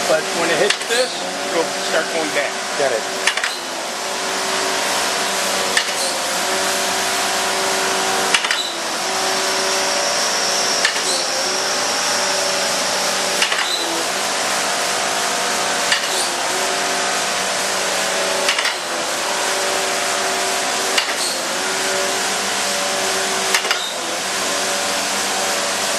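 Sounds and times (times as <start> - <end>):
surface grinder hum and whine: 0.0 - 25.9
grinder table reversing click: 5.7 - 6.2, 8.3 - 8.8, 9.6 - 11.3, 13.3 - 14.0, 15.8 - 16.4, 18.4 - 18.8, 20.9 - 21.5, 23.5 - 24.0.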